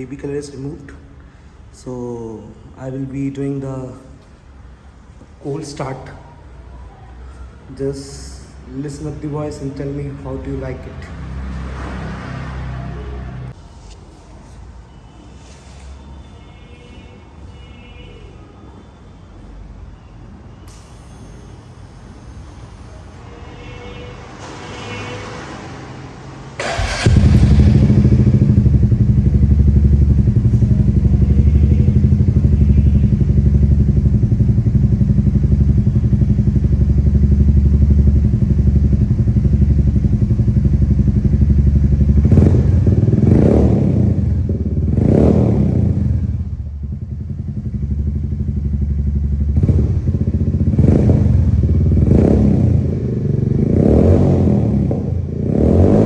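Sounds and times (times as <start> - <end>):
motorcycle engine idling and revving: 20.7 - 23.2, 26.6 - 56.0.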